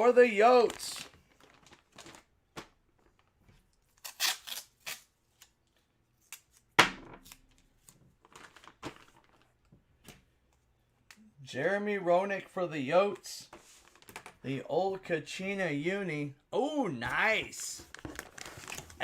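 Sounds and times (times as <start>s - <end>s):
plastic packaging crinkling and tearing: 0.3s - 5.6s, 7.3s - 9.6s, 17.9s - 19.0s.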